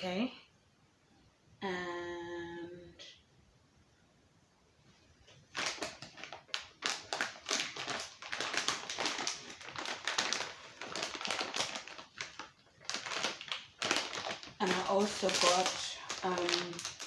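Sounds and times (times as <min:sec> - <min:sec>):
plastic food packets crinkling: 0:05.4 - 0:17.0.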